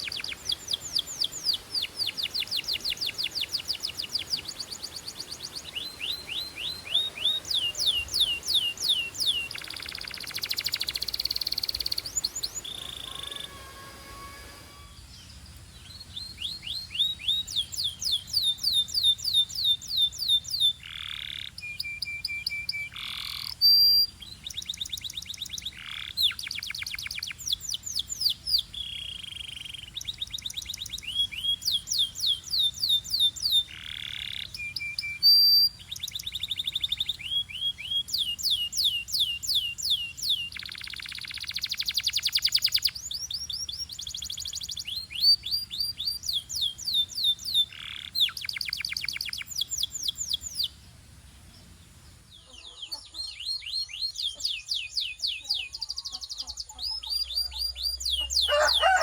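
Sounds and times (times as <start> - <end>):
canary singing: 0.0 - 59.0.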